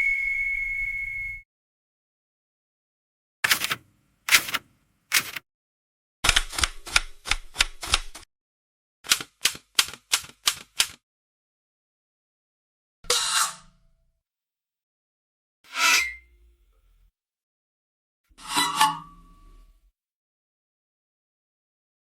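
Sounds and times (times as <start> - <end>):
keyboard keystroke clicks: 6.3 - 8.2, 9.1 - 11.0.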